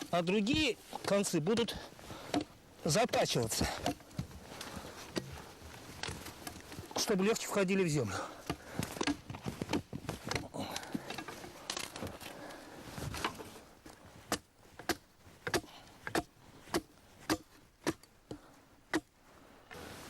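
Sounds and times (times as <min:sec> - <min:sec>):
cutting and scraping wood: 0:00.0 - 0:20.0
blade chopping wooden stake: 0:03.6 - 0:05.4, 0:14.3 - 0:19.1.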